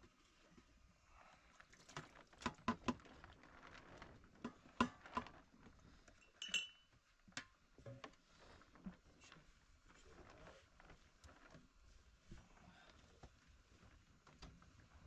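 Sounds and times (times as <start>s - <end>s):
light clicks and clinks: 6.2s - 7.0s.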